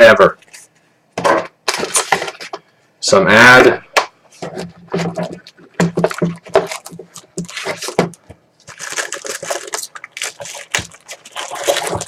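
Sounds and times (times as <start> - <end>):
packaging rustling and clicking: 0.4 - 2.6, 4.4 - 12.0
plastic wrap crinkling: 1.6 - 2.6, 4.4 - 12.0.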